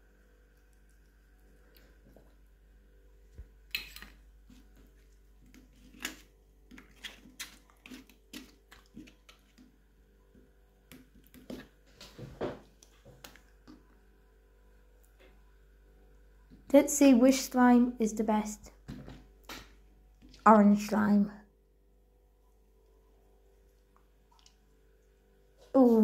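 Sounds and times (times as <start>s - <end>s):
hands handling slime pots: 3.4s - 9.8s.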